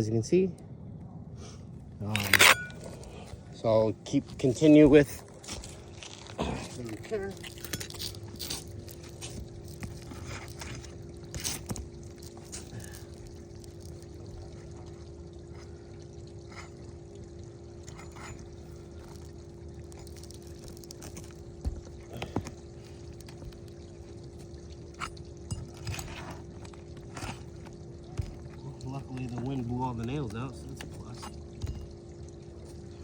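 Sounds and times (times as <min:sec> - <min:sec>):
steady low hum: 0:00.0 - 0:33.0
hand tools scraping and tapping: 0:02.1 - 0:02.9, 0:17.8 - 0:23.7, 0:25.0 - 0:32.0.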